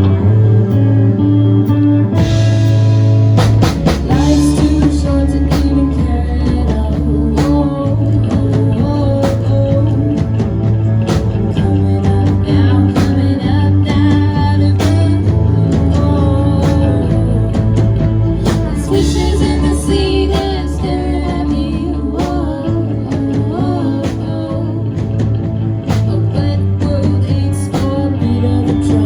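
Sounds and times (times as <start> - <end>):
rock band playing: 0.0 - 29.0
person singing: 3.9 - 29.0.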